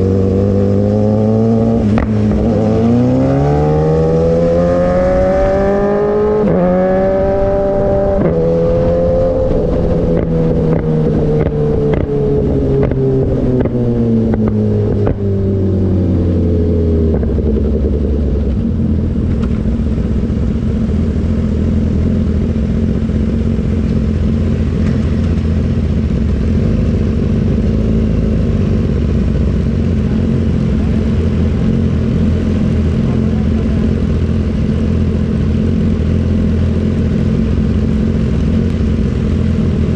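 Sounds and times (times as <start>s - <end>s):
motorcycle engine revving: 0.0s - 39.9s
exhaust pops and crackles: 9.7s - 15.2s
motorcycle engine idling: 14.1s - 39.9s.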